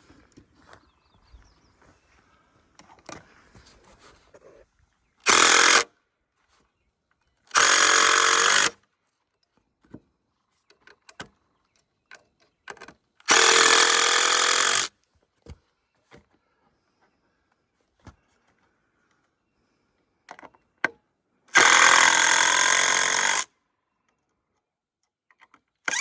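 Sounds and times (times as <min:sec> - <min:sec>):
impact driver driving screws: 0:05.2 - 0:05.9, 0:07.5 - 0:08.8, 0:13.2 - 0:14.9, 0:21.5 - 0:23.5.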